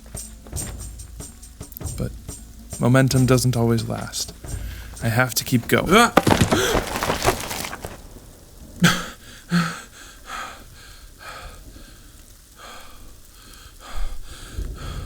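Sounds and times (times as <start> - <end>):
rain falling: 1.0 - 15.0
footsteps on wet forest ground: 5.7 - 8.7
heavy breathing: 8.8 - 15.0.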